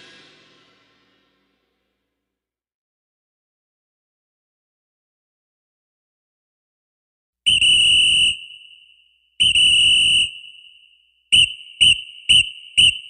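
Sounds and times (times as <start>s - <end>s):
pea whistle blasts: 7.5s - 13.0s.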